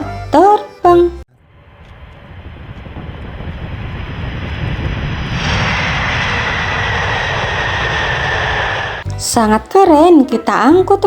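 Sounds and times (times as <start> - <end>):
airplane engine whine: 1.3 - 9.0.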